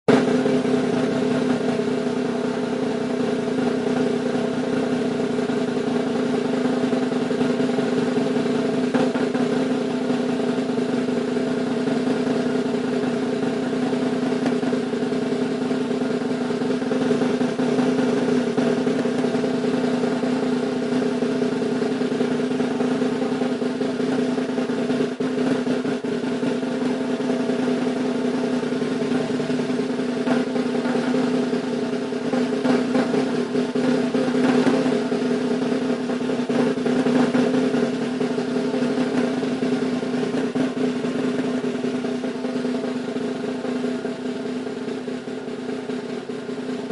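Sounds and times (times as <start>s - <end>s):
snare drum roll: 32.3s - 35.9s.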